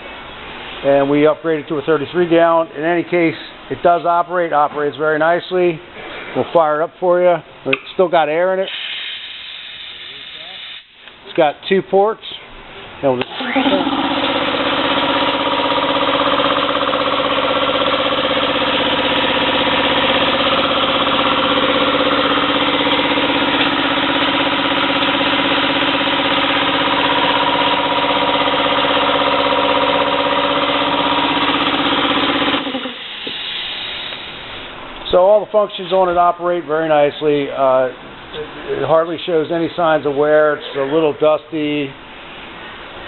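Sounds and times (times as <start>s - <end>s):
air compressor running: 8.6s - 11.1s, 13.2s - 36.4s.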